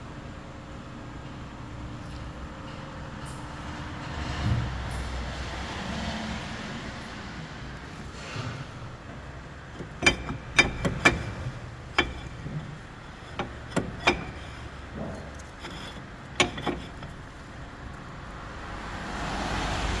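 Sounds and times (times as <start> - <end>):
sharp irregular knocks: 9.8 - 17.3.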